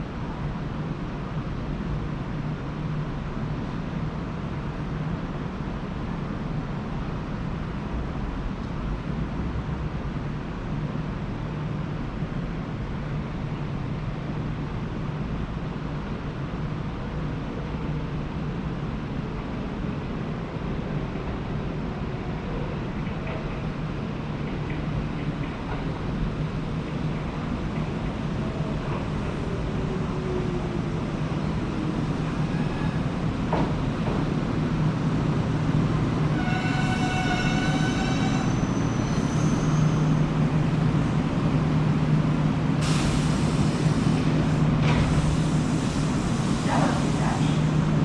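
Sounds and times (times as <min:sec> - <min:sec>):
electric train running hum: 0:00.0 - 0:48.0
train horn: 0:36.3 - 0:39.0.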